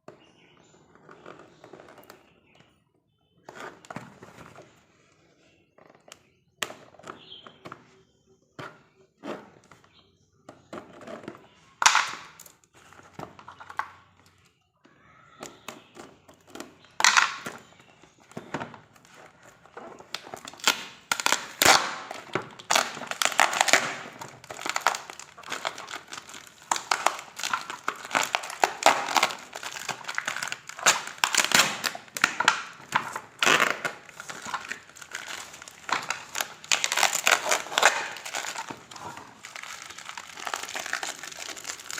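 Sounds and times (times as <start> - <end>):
packaging crinkling and rustling: 16.5 - 41.9.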